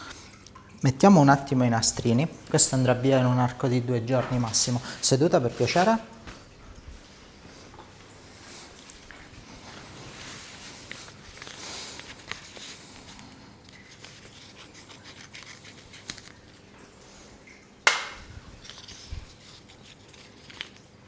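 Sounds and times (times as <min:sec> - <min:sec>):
tape strips rustling and scratching: 0:10.8 - 0:16.8, 0:18.2 - 0:21.0
sharp snap: 0:17.9 - 0:18.2.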